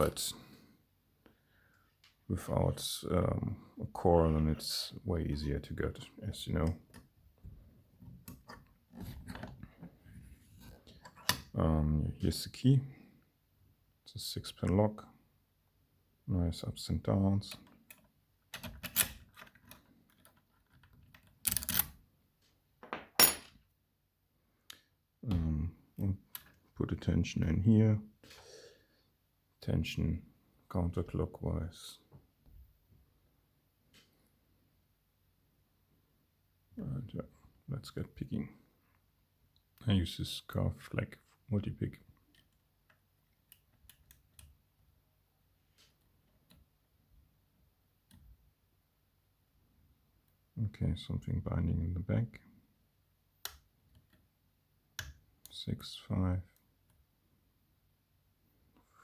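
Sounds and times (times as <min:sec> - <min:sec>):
metal lock clicks and rattles: 0:17.9 - 0:22.0.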